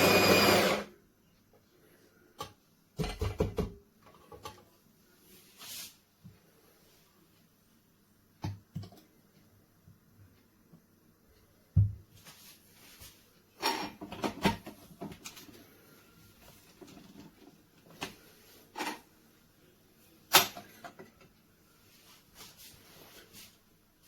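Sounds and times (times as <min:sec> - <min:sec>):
hard objects knocking and clicking: 0:03.0 - 0:04.6.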